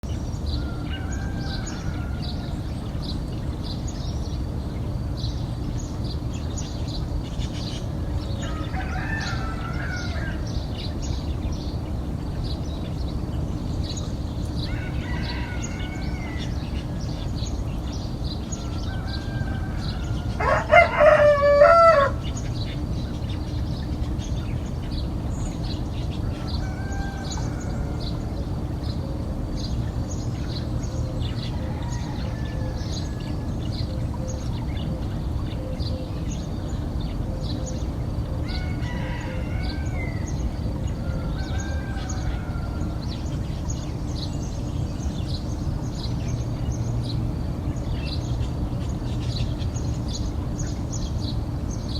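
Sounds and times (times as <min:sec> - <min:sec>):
songbirds chirping: 0:00.0 - 0:51.9
distant roosters crowing: 0:00.2 - 0:05.3, 0:06.0 - 0:51.9
close rooster crowing loudly: 0:00.6 - 0:02.6, 0:08.4 - 0:10.5, 0:14.6 - 0:16.7, 0:18.6 - 0:22.4, 0:26.3 - 0:28.4, 0:31.5 - 0:33.5, 0:38.4 - 0:43.2.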